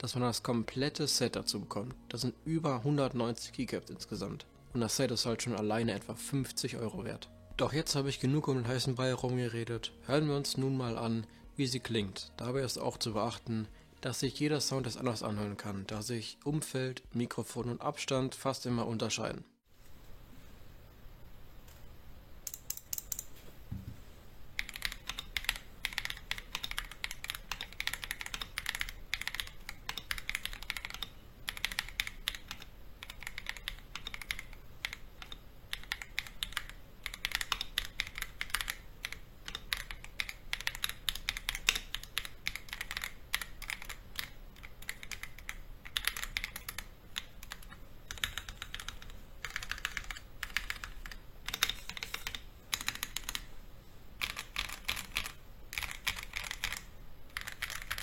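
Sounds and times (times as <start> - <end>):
mechanical keyboard typing: 22.4 - 23.3, 24.5 - 53.5, 54.2 - 58.0.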